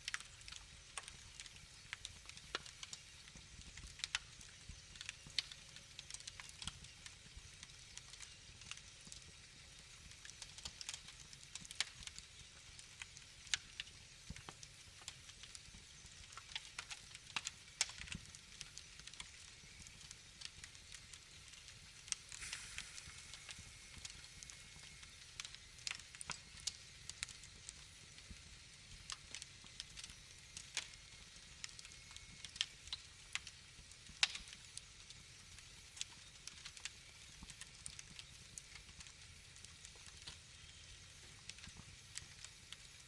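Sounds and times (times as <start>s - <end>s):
wood fire crackling: 0.0s - 43.0s.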